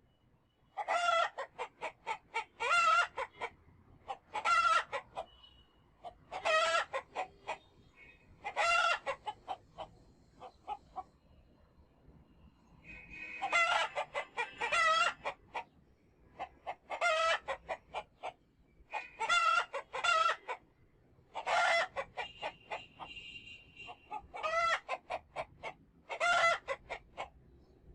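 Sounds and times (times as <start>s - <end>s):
chickens clucking: 0.8s - 5.4s, 6.0s - 7.7s, 8.4s - 11.2s, 13.4s - 15.8s, 16.4s - 20.7s, 21.3s - 23.2s, 23.9s - 27.4s
roosters crowing: 12.8s - 15.3s, 21.4s - 23.2s, 26.2s - 26.8s.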